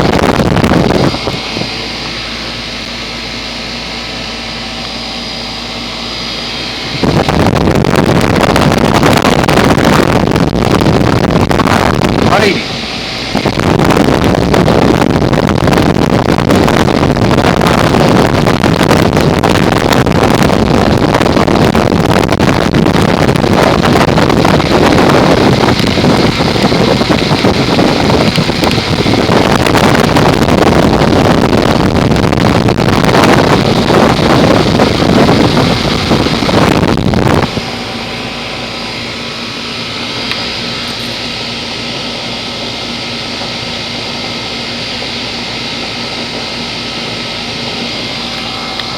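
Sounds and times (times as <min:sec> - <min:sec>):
heat pump fan rushing air: 0:00.0 - 0:48.9
low hum with faint tones: 0:00.0 - 0:48.9.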